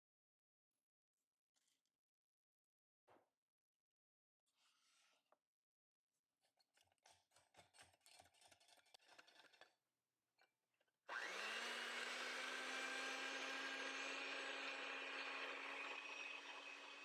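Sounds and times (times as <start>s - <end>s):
electric mixer motor whine: 11.1s - 17.0s.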